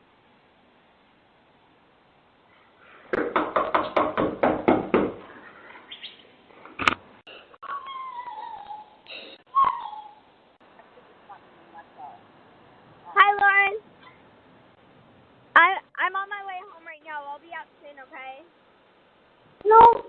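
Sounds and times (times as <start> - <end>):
pounding on a door: 3.1 - 5.2
short high cries: 7.6 - 10.3.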